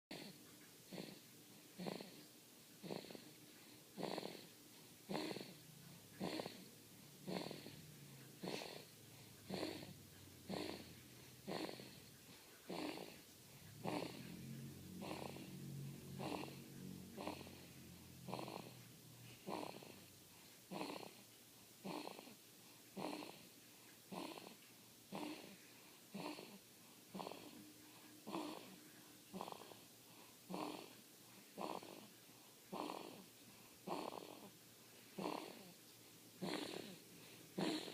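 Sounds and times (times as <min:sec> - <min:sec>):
baby snoring: 0:00.1 - 0:37.9
low purring rattle: 0:05.1 - 0:20.1, 0:36.4 - 0:37.9.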